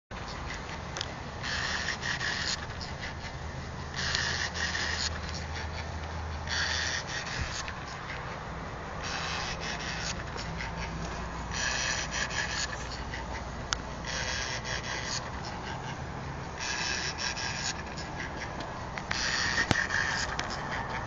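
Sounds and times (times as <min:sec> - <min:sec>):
steady low hum: 0:00.1 - 0:21.0
engine hissing buzz: 0:00.8 - 0:21.0.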